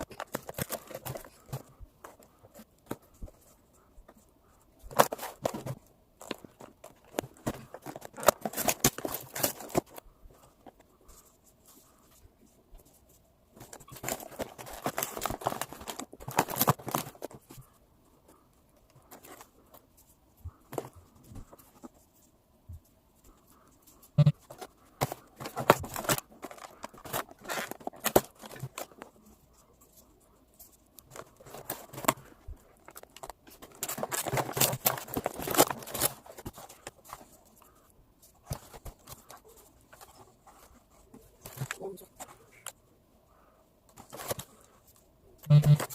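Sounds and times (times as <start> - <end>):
packaging crinkling and tearing: 0.0 - 2.2, 4.9 - 10.0, 13.6 - 17.6, 24.0 - 30.0, 30.8 - 37.8, 43.9 - 45.9.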